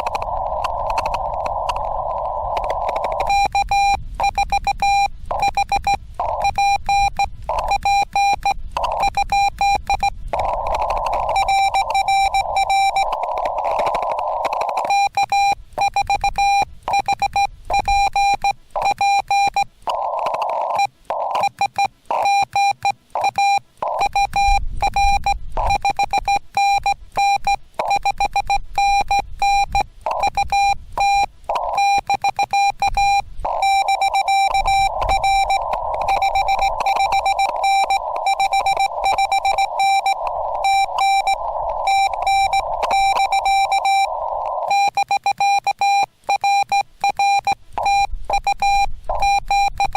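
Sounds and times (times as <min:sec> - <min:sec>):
radio band noise hiss: 0:00.0 - 0:17.9, 0:18.6 - 0:22.2, 0:26.9 - 0:44.9
morse code beeps: 0:00.0 - 0:49.9.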